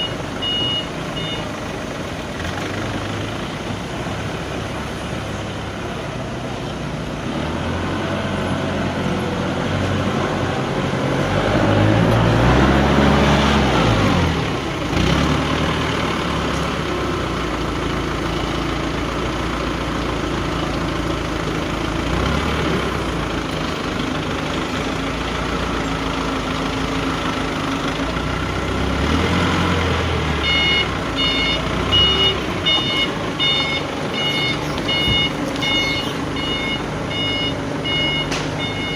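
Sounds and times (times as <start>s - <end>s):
reversing alarm beeping: 0.0s - 1.5s, 30.4s - 38.9s
diesel engine revving: 0.0s - 38.9s.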